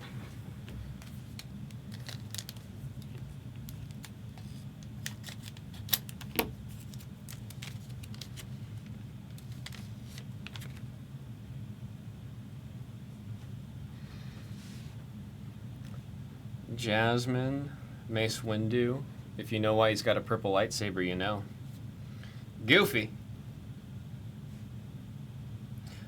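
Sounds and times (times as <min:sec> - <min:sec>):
trading cards flipping: 0:00.9 - 0:08.5.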